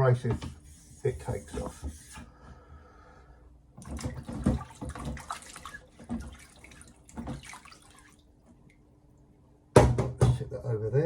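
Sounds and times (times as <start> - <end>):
water splashing and trickling: 3.8 - 8.9.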